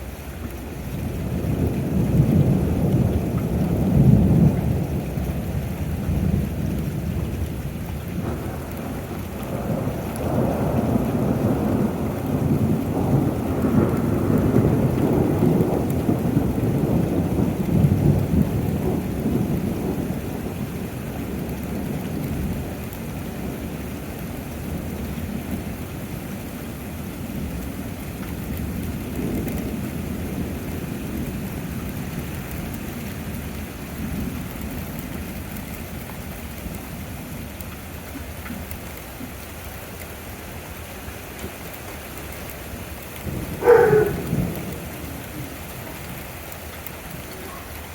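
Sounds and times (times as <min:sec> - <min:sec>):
steady rain: 0:00.0 - 0:47.9
thunder rumbling: 0:01.2 - 0:22.7, 0:42.2 - 0:47.9.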